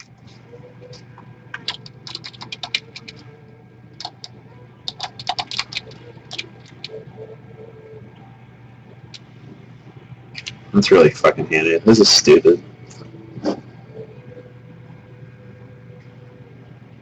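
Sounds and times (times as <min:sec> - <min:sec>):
faint steady hum: 0:00.0 - 0:17.0
keyboard typing: 0:00.9 - 0:03.3, 0:04.0 - 0:07.3.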